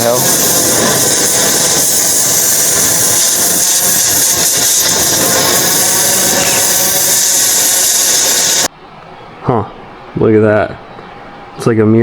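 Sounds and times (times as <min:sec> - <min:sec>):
cutting torch hissing: 0:00.0 - 0:08.7.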